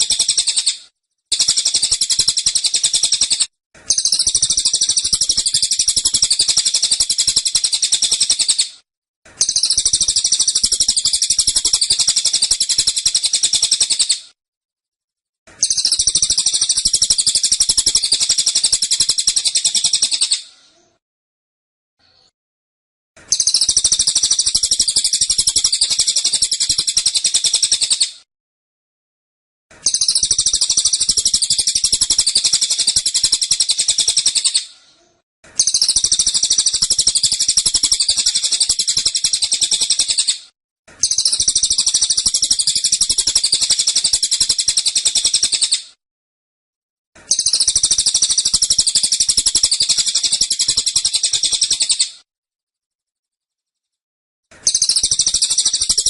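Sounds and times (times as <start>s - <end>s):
songbird rapid-fire song: 0.0s - 8.7s, 9.4s - 14.2s, 15.6s - 20.4s, 23.3s - 28.2s, 29.8s - 34.6s, 35.6s - 40.4s, 41.0s - 45.8s, 47.2s - 52.1s, 54.6s - 56.0s.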